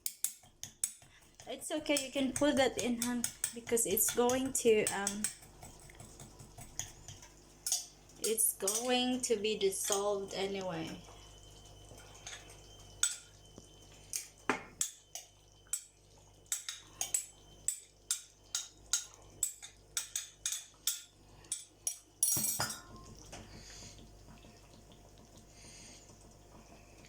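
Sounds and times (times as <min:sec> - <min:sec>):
spoon knocking against pot: 0:00.0 - 0:09.0, 0:21.9 - 0:23.3.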